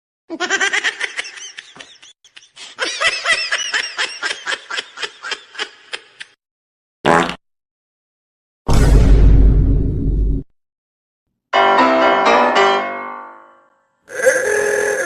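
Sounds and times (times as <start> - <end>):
cartoonish high-pitched giggles: 0.3 - 6.4.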